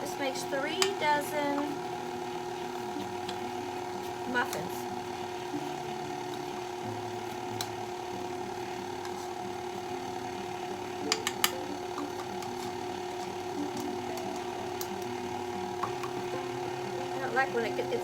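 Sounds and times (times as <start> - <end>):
kitchen appliance humming: 0.0 - 18.0
measuring spoon clicking against bowl: 11.1 - 12.5.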